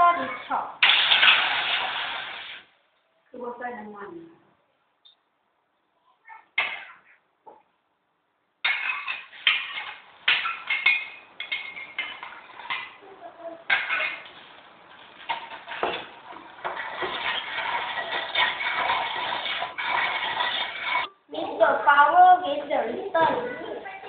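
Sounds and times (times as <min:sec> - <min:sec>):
utensil scraping a saucepan: 0:08.6 - 0:13.0, 0:13.7 - 0:21.2.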